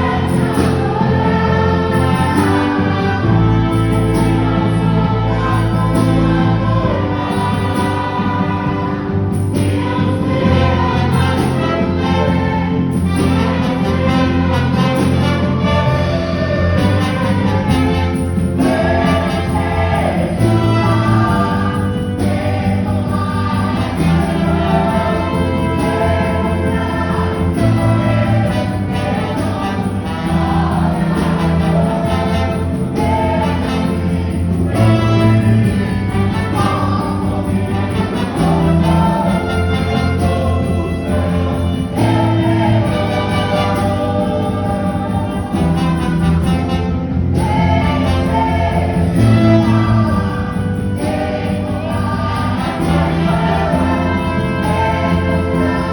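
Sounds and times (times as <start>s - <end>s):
choir singing gospel music: 0.0s - 55.9s
sustained bass notes: 0.0s - 55.9s.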